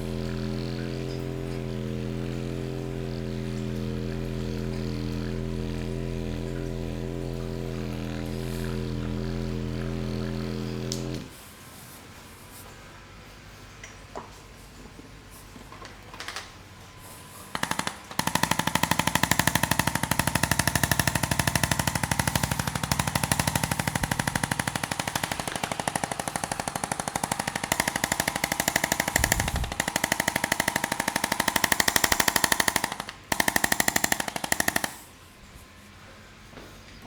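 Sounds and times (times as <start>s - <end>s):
electric massager pulsing: 0.0s - 11.6s, 17.4s - 35.2s.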